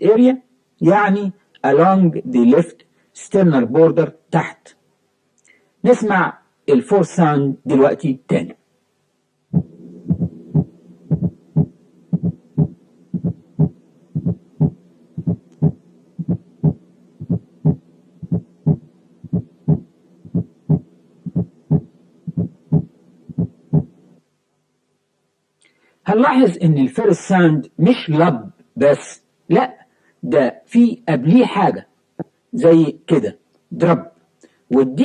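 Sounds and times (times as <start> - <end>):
faint steady hum: 0.0 - 35.0
heartbeat through stethoscope: 9.5 - 23.9.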